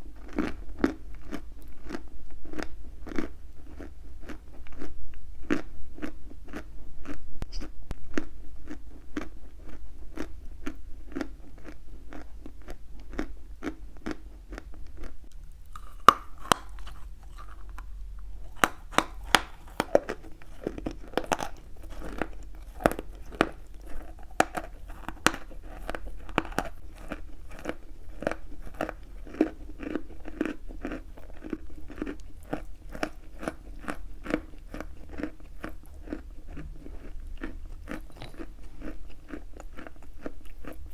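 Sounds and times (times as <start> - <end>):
chalk crunching while chewed: 0.1 - 40.9.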